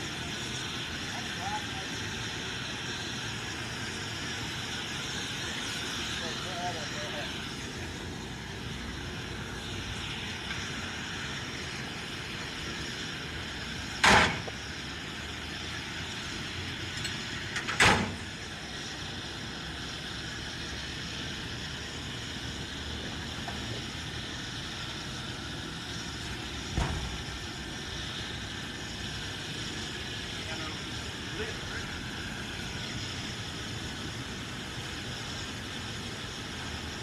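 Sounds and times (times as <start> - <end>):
steady machine noise: 0.0 - 37.0
loud sharp knocks: 14.0 - 14.4, 26.7 - 27.1.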